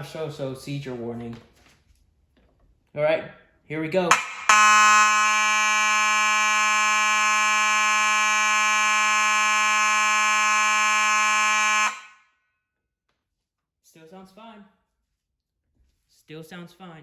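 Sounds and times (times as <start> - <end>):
fire alarm horn buzzing: 4.1 - 12.2.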